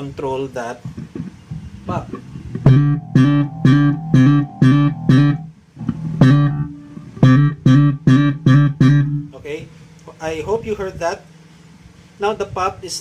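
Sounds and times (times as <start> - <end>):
slap bass guitar notes: 0.9 - 9.6.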